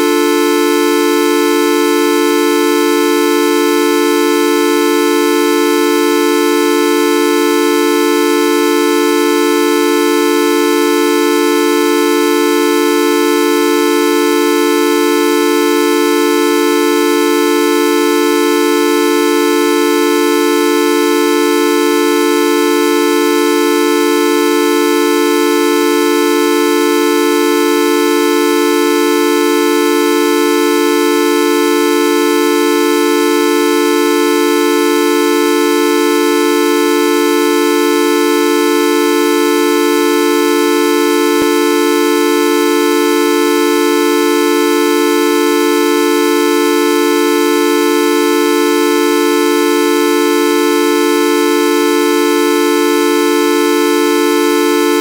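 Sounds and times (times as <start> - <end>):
buzzy horn-like electronic tone: 0.0 - 1.2, 39.0 - 55.0.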